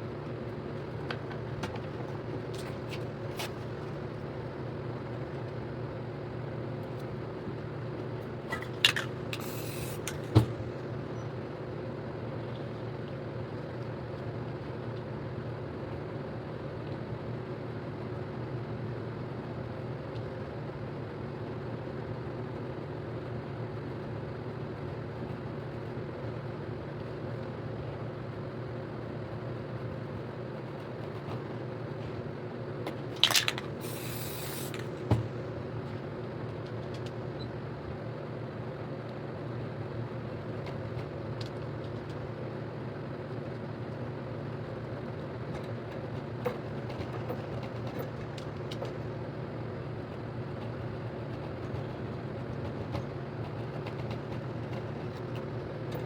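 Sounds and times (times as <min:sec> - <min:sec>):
spray can hissing: 0:09.4 - 0:10.1, 0:33.8 - 0:34.9
spray can clicking: 0:33.2 - 0:34.9.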